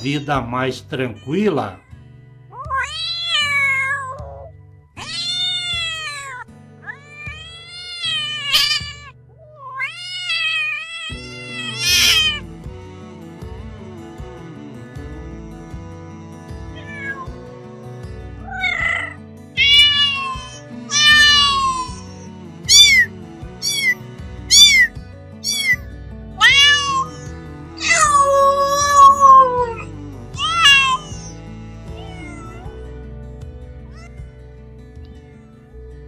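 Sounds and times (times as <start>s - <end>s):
background music: 0.0s - 36.0s
cat meowing: 2.5s - 12.5s, 16.8s - 17.4s, 18.4s - 25.8s, 26.4s - 32.8s, 33.9s - 34.2s.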